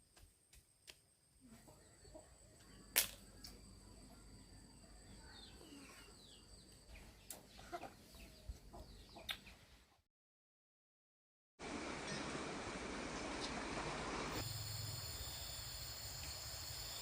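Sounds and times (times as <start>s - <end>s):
chickens clucking: 1.5s - 2.4s, 7.3s - 9.6s.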